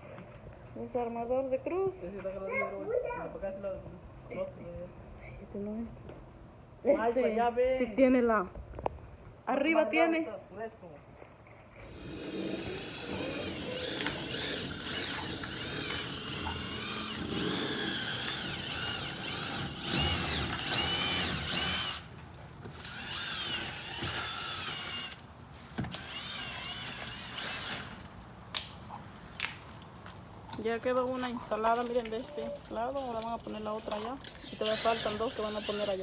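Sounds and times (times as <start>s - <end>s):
cordless drill motor whine: 11.8s - 28.1s, 33.4s - 36.0s
drill clicks: 11.8s - 28.8s, 33.0s - 36.0s.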